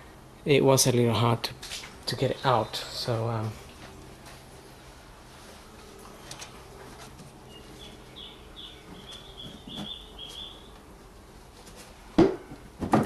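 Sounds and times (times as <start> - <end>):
bird chirping: 7.4 - 10.8.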